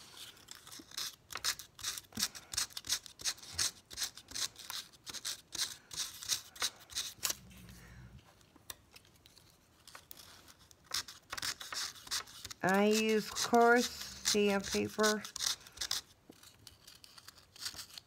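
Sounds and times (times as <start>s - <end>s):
sandpaper rasping on metal: 10.9s - 16.1s.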